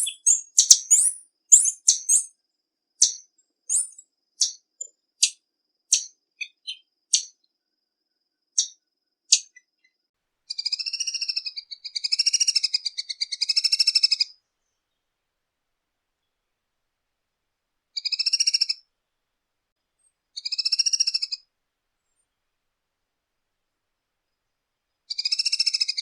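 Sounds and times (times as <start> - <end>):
bird chip notes: 0.0 - 2.3, 3.0 - 7.3
bird trill: 0.0 - 2.4, 3.0 - 7.4, 8.5 - 14.4, 18.0 - 18.8.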